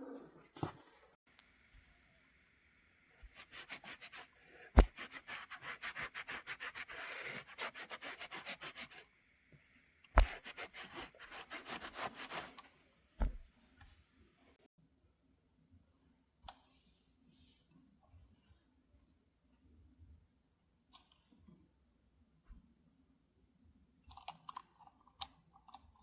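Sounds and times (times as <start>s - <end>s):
needle scratching through fabric: 3.2s - 9.1s, 10.2s - 12.6s.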